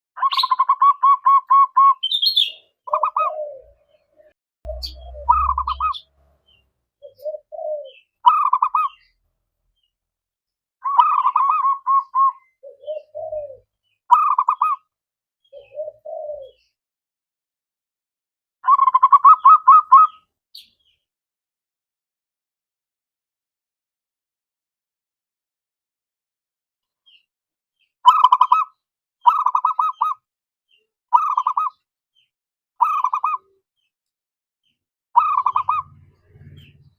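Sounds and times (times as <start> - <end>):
dove cooing song: 0.2 - 9.1, 10.8 - 14.8, 15.5 - 16.8, 18.7 - 20.2, 28.1 - 28.7, 29.3 - 30.2, 31.1 - 31.8, 32.8 - 33.6, 35.2 - 36.9.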